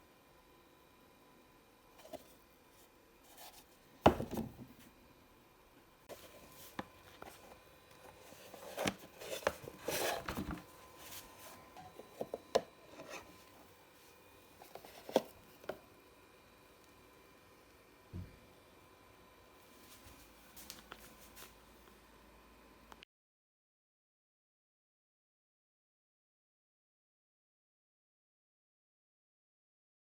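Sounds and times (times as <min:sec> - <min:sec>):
plastic rustling: 0:06.1 - 0:13.5.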